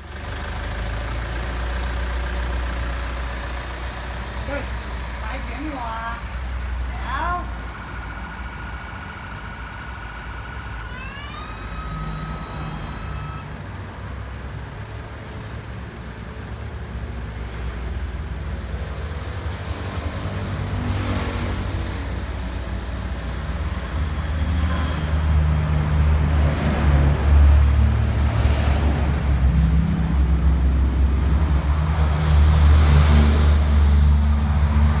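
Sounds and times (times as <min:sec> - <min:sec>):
motor vehicle humming: 0:00.0 - 0:35.0
electronic siren tone: 0:10.5 - 0:13.6.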